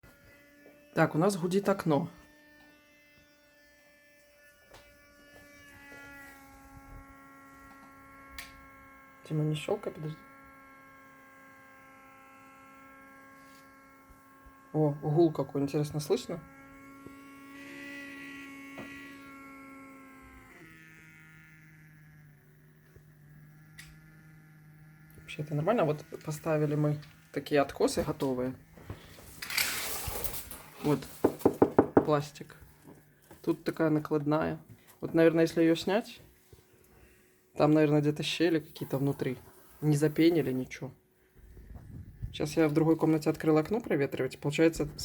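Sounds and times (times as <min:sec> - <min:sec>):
window humming in the wind: 0:41.5 - 0:42.4.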